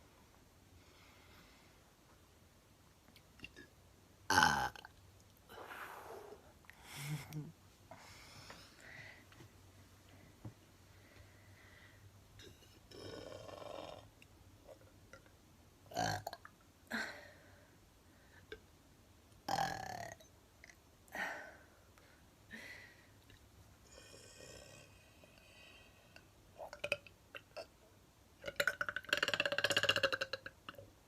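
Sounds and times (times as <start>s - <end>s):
woman burping: 4.3s - 4.9s.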